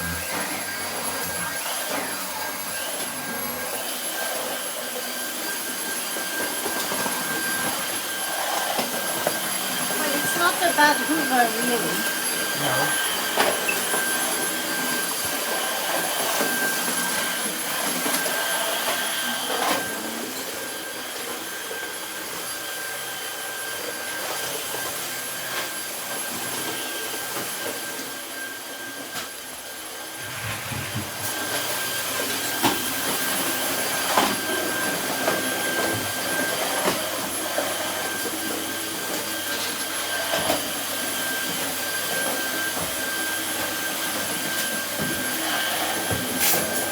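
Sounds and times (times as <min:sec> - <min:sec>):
stick vacuum running: 0:00.0 - 0:46.9.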